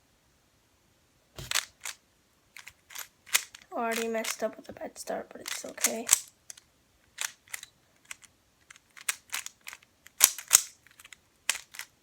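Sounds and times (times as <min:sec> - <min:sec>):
puzzle cube plastic clicks: 0:01.4 - 0:02.0, 0:02.6 - 0:04.5, 0:05.4 - 0:12.0.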